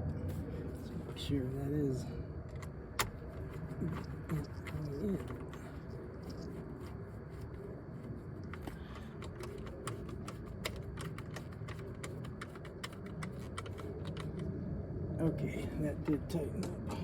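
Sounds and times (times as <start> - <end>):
ratchet clicking: 8.4 - 14.4.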